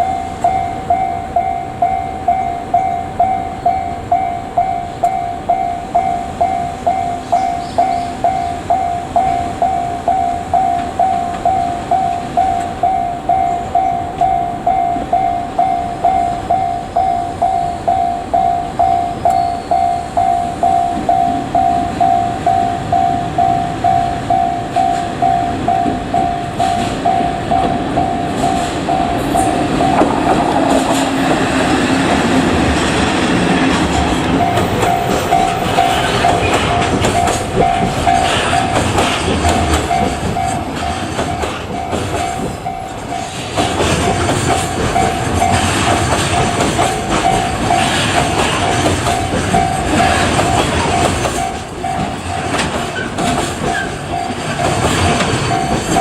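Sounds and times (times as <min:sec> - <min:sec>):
level crossing bell ringing: 0:00.0 - 0:32.5, 0:33.2 - 0:56.0
electric locomotive rumble: 0:00.0 - 0:56.0
wagons clattering over rails: 0:24.2 - 0:56.0.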